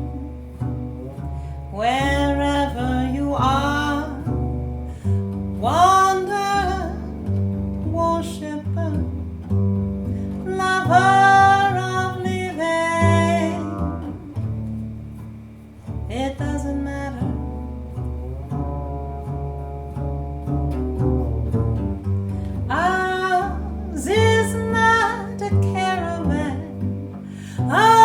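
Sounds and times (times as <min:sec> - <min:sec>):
double bass: 0:00.0 - 0:28.0
woman singing: 0:01.5 - 0:09.2, 0:10.2 - 0:14.9, 0:15.9 - 0:18.9, 0:22.5 - 0:28.0.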